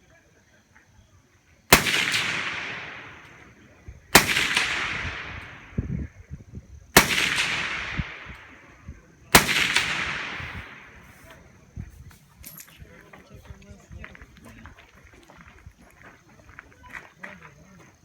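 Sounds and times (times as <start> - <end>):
rifle shots echoing: 1.7 - 6.1, 7.0 - 11.8.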